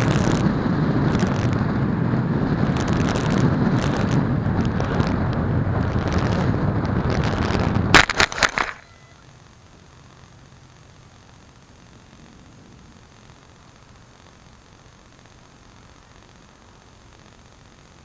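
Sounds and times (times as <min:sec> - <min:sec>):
model plane motor and wind: 0:00.0 - 0:13.9
sharp cracks: 0:00.0 - 0:18.0
faint steady hiss: 0:06.2 - 0:18.0.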